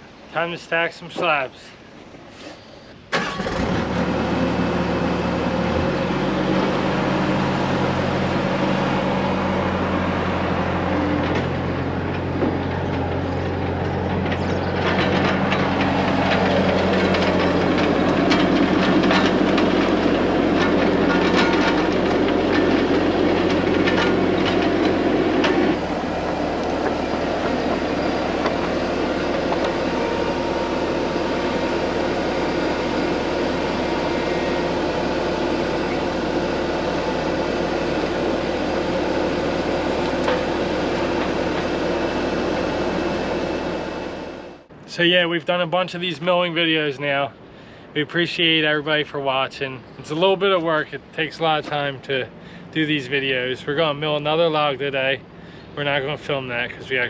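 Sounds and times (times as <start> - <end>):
diesel engine starting and revving: 3.1 - 44.8
knocks and clatter: 11.1 - 29.8.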